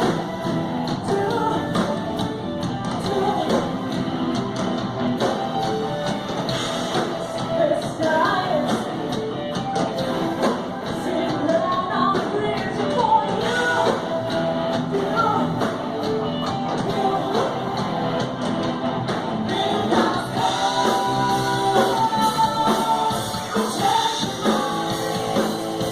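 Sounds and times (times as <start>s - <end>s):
person singing: 0.0s - 4.4s, 6.9s - 9.4s, 10.8s - 17.9s, 19.4s - 25.9s
rock and roll song: 0.0s - 25.9s.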